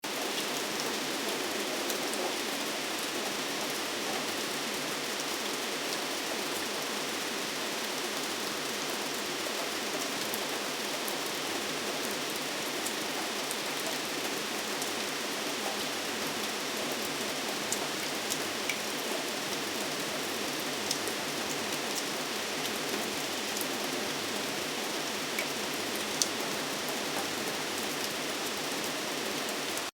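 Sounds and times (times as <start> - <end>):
raindrops ticking on a surface: 0.1 - 29.9
steady rain hiss: 0.1 - 29.9.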